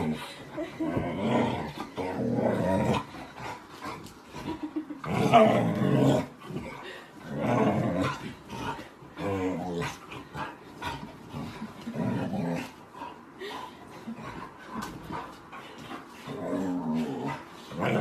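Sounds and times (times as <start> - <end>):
dog growling: 0.0 - 4.0, 5.0 - 13.1, 16.2 - 18.0.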